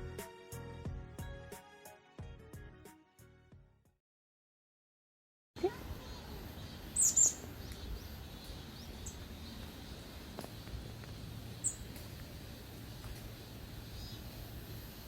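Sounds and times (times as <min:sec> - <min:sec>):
faint outdoor ambience: 0:05.6 - 0:15.0
high bird chirps: 0:06.0 - 0:09.7.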